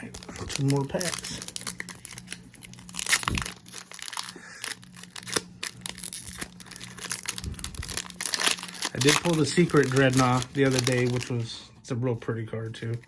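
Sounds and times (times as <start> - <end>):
foil wrapper crinkling and tearing: 0.0 - 11.6.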